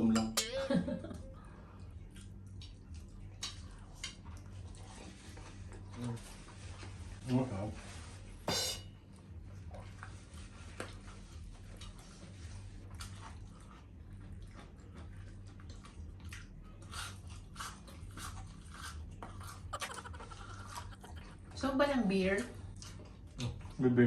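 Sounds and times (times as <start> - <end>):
low electrical hum: 0.0 - 24.0
chewing crispy food: 1.4 - 7.3, 9.1 - 21.6, 22.3 - 24.0
wet mouth sounds: 16.9 - 21.4.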